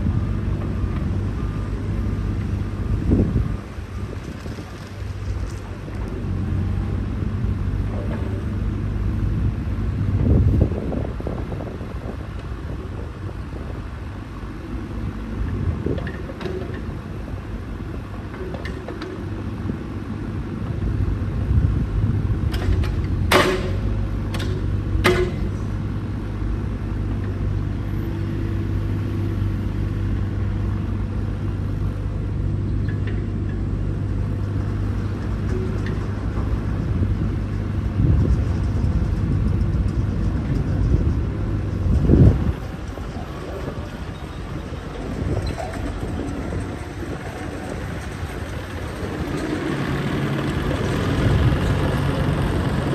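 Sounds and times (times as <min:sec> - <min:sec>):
excavator diesel engine running: 0:00.0 - 0:52.9
sharp knocks: 0:23.3 - 0:23.8, 0:24.4 - 0:25.5.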